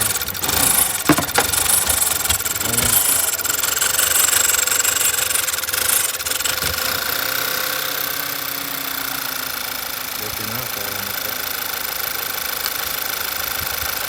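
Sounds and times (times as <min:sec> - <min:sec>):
car engine running: 0:00.0 - 0:14.0.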